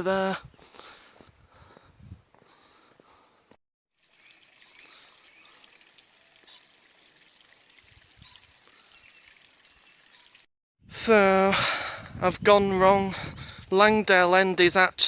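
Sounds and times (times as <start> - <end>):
distant birds chirping: 0.6 - 10.4.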